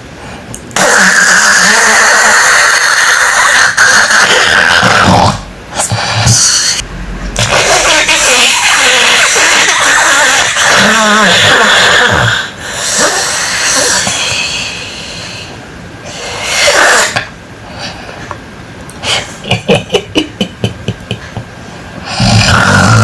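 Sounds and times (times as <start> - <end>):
person snoring and snorting: 0.8 - 15.5, 16.1 - 18.0, 22.0 - 23.0.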